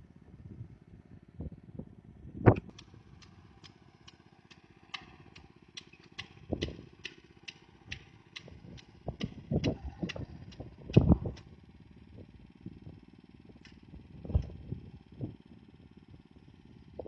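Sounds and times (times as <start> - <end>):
small engine running: 0.0 - 17.0
rhythmic machine clicking: 2.7 - 11.5.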